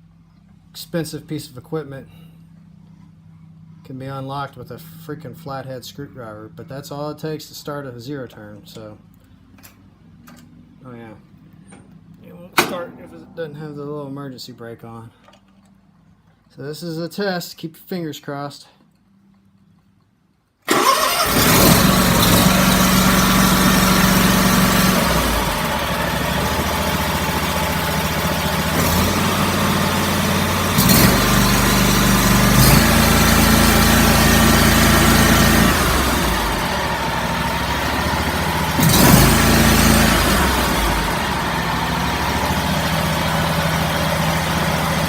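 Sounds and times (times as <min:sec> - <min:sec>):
mower engine revving: 0:20.7 - 0:45.0.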